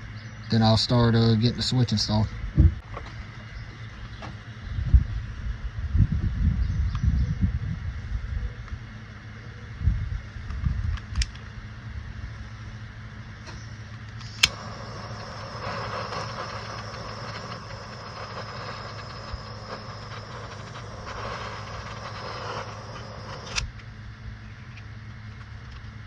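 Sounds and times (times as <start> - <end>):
steady low hum: 0.0 - 26.0
gas torch clicking: 11.0 - 11.5, 14.0 - 23.9
gas torch hissing: 14.1 - 23.7.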